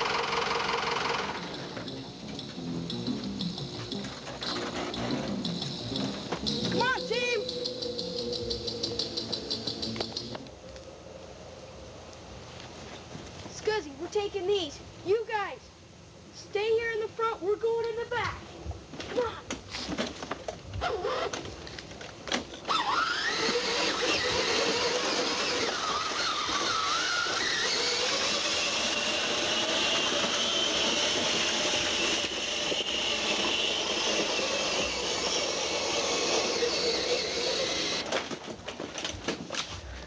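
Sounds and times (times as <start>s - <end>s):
motor whining: 0.0s - 10.5s, 22.7s - 38.1s.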